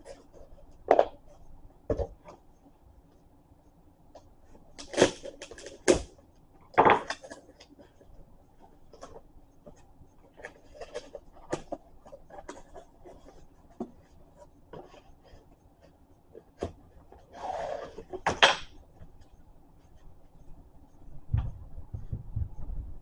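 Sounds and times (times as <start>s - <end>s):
cardboard scrape: 17.2s - 18.3s.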